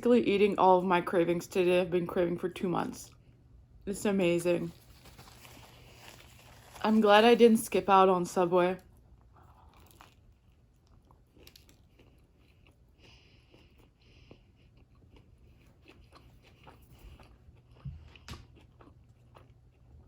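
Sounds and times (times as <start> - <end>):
person chewing sandwich: 4.7 - 6.8, 8.8 - 20.0.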